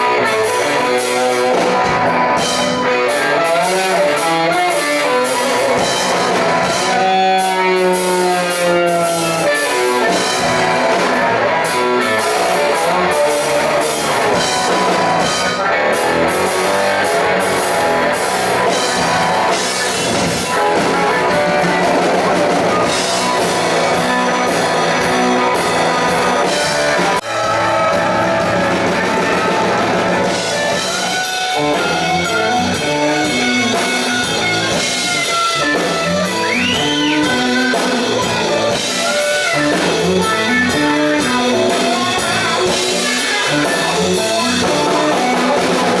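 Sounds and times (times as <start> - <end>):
rock band playing live: 0.0 - 46.0.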